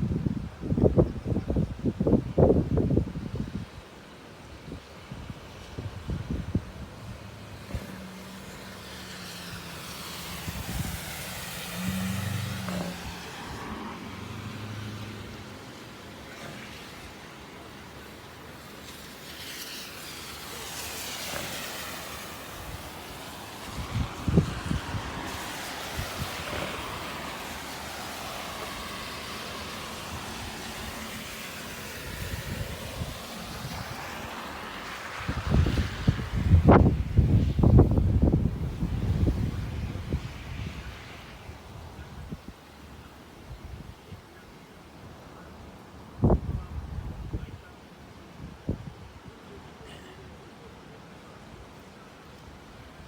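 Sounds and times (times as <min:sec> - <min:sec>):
wind buffeting microphone: 0:00.0 - 0:03.8, 0:04.7 - 0:15.4, 0:23.6 - 0:27.0, 0:35.2 - 0:42.6, 0:46.1 - 0:47.7
storm wind: 0:00.0 - 0:19.3, 0:20.0 - 0:47.7
vehicle tyre and road noise: 0:00.0 - 0:49.3
river rushing: 0:03.7 - 0:39.2.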